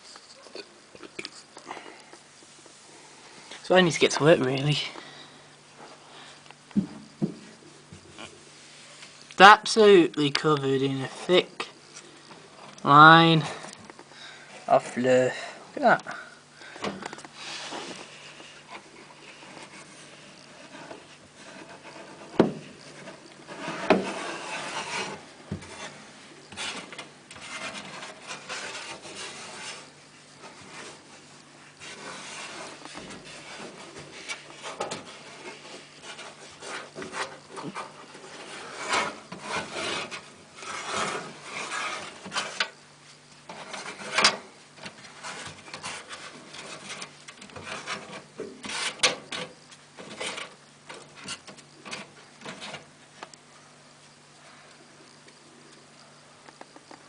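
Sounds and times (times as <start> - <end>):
scraping and rubbing of parts: 16.4 - 53.2.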